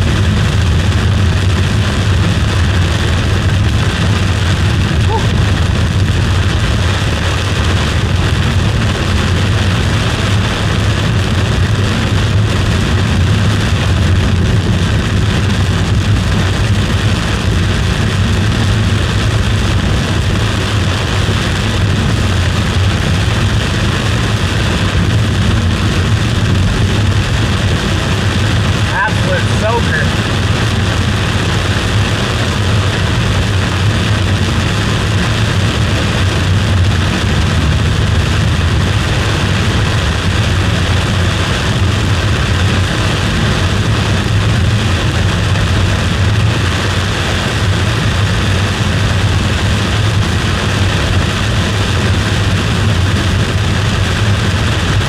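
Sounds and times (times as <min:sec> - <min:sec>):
car engine and road rumble: 0:00.0 - 0:55.0
constant hiss: 0:15.9 - 0:55.0.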